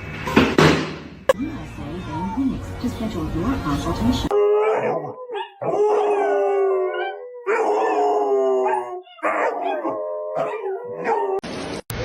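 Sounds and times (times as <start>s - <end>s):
dog howling: 4.3s - 11.4s.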